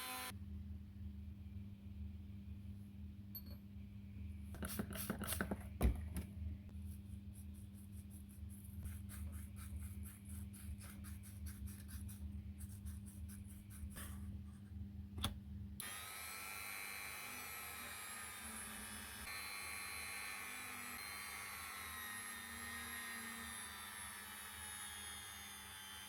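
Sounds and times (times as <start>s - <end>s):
power tool rubbing metal: 0.0s - 0.3s
tool whirring with high whine: 0.0s - 0.3s, 15.8s - 26.0s.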